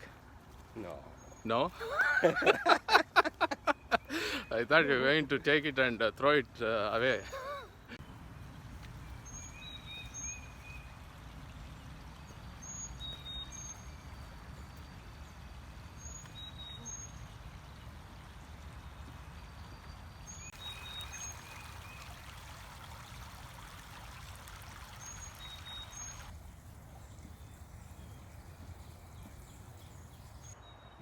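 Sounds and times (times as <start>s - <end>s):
stream running: 0.0s - 30.6s
high bird chirps: 16.0s - 17.3s, 25.0s - 31.0s.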